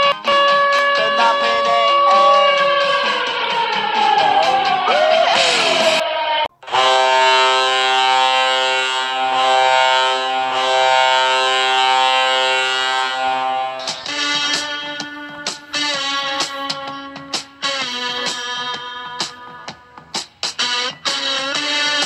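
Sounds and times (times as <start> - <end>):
arena goal horn blast: 0.0 - 4.2, 6.6 - 19.4
rock song: 0.0 - 6.0.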